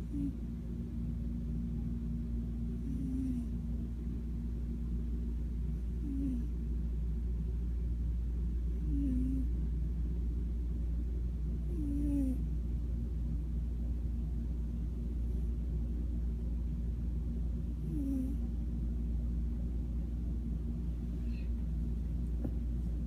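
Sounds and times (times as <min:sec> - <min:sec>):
snoring: 0:08.8 - 0:09.5.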